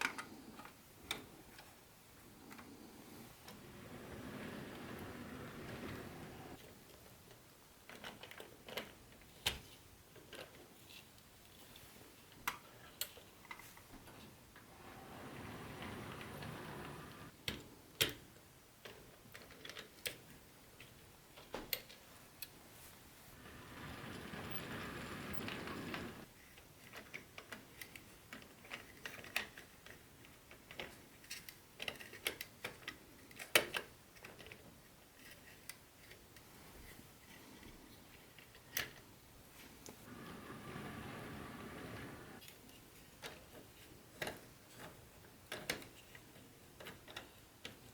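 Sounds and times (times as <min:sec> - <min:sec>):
plastic parts clicking and tapping: 0:00.0 - 0:01.7, 0:07.3 - 0:11.2, 0:17.4 - 0:22.5, 0:26.5 - 0:36.5, 0:42.4 - 0:47.9
clicks of model train pieces handled: 0:26.6 - 0:34.6.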